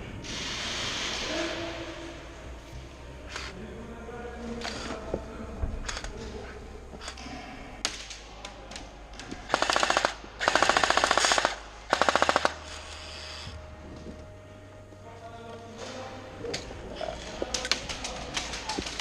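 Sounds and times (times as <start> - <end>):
airsoft gun full-auto bursts: 9.5 - 13.5.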